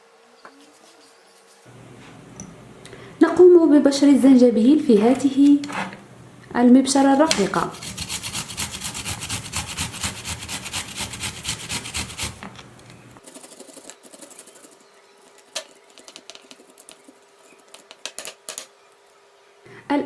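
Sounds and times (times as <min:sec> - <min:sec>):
ginger grating rasping: 0:06.9 - 0:12.5, 0:13.2 - 0:18.0.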